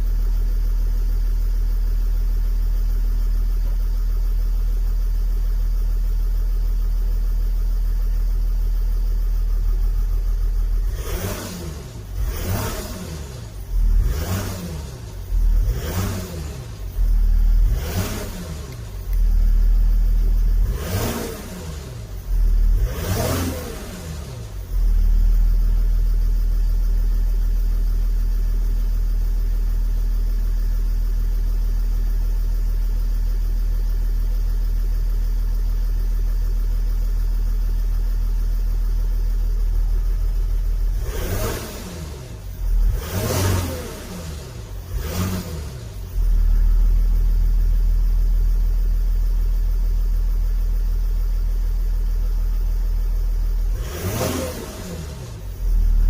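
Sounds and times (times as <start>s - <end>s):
engine rattle: 0.0s - 56.0s
diesel engine revving: 10.4s - 26.4s, 38.3s - 47.7s, 52.6s - 56.0s.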